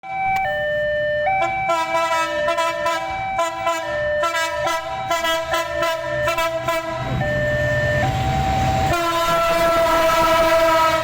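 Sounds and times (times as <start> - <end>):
train musical horn playing a tune: 1.4 - 7.1, 8.8 - 11.0
low train rumble: 1.6 - 11.0.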